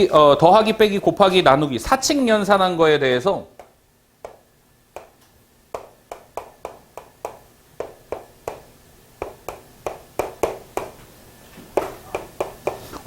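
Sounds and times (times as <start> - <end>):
pen tapping on a board: 3.6 - 11.0, 11.8 - 12.9.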